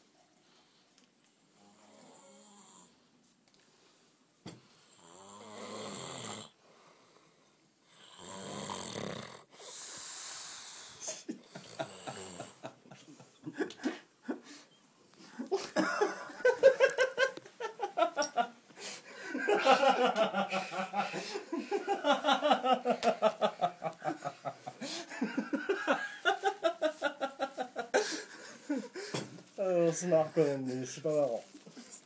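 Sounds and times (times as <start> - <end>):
man snoring: 1.6 - 3.0, 4.9 - 6.6, 7.9 - 12.6.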